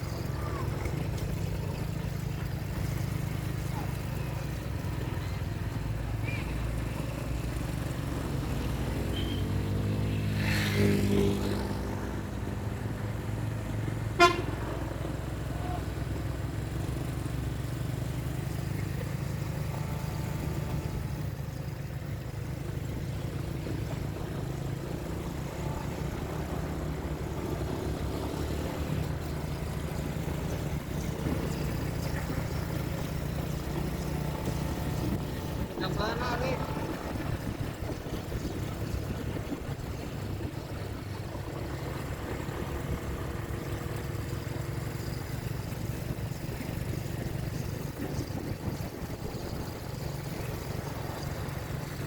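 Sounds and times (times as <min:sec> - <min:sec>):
vehicle engine humming: 0:00.0 - 0:52.0
horn blast: 0:14.1 - 0:14.8.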